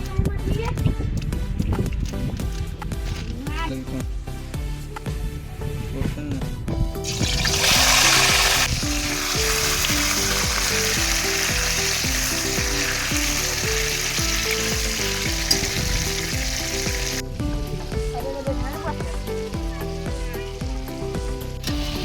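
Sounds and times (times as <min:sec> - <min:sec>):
background music: 0:00.0 - 0:22.0
food sizzling in hot oil: 0:07.0 - 0:22.0.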